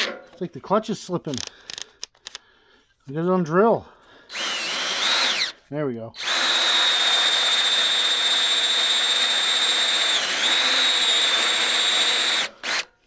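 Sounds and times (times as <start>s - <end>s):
cordless drill boring through steel: 4.3s - 5.6s, 6.2s - 13.0s.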